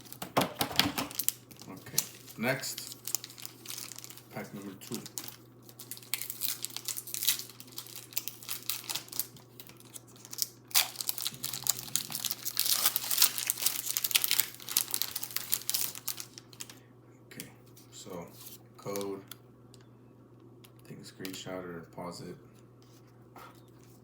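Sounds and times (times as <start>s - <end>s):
foil wrapper crinkling and tearing: 0.8s - 16.8s.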